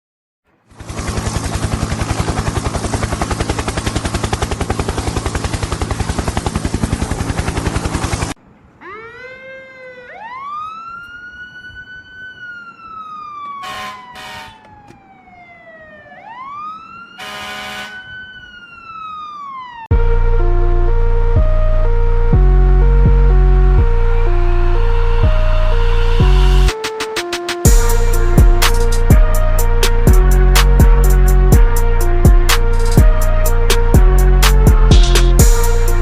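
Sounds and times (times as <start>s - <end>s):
fast fluttering noise: 0.6s - 8.4s
siren wailing: 5.8s - 26.7s, 27.4s - 36.0s
short horn blasts: 13.6s - 14.6s, 17.2s - 18.1s
music: 19.9s - 36.0s.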